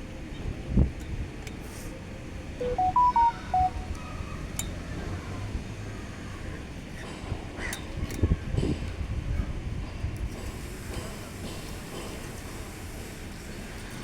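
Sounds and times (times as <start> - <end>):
wind: 0.0 - 14.0
short electronic beeps: 2.6 - 4.0.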